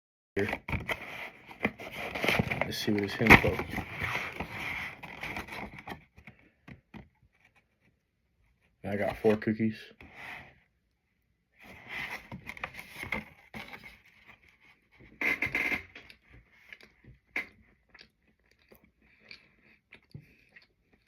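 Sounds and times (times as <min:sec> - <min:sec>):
packaging scraping and rustling: 0:00.4 - 0:06.2.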